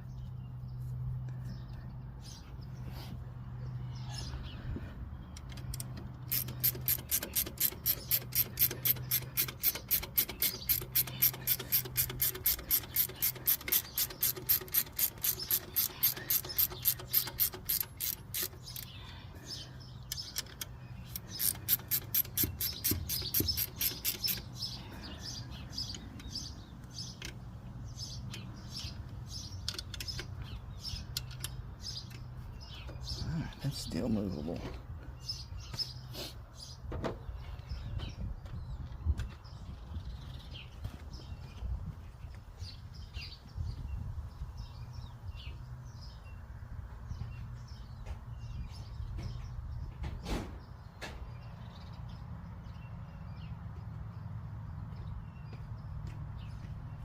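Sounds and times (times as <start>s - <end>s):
ratchet wrench clicking: 5.4s - 19.0s, 20.1s - 24.5s.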